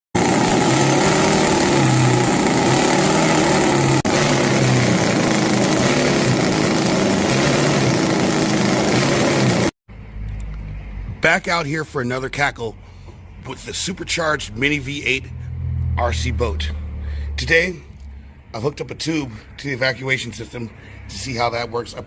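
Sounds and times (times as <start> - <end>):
model boat engine at high revs: 0.1 - 9.8.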